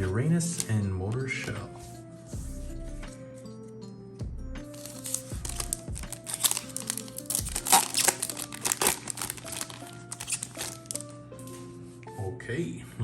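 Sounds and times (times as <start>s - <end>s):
background music: 0.0s - 13.0s
foil wrapper crinkling and tearing: 4.7s - 11.1s.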